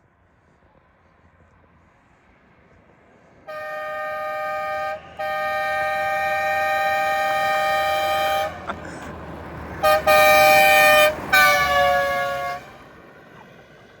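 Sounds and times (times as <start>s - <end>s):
two-tone air horn blasts: 3.5s - 8.9s, 9.8s - 12.9s.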